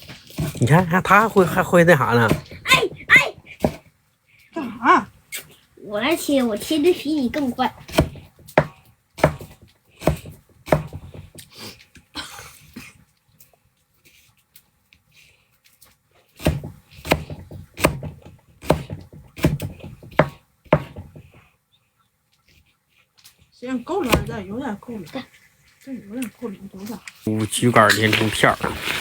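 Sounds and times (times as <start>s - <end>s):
knife chopping on cutting board: 2.2s - 2.6s, 7.9s - 11.2s, 16.4s - 21.1s, 24.0s - 24.3s.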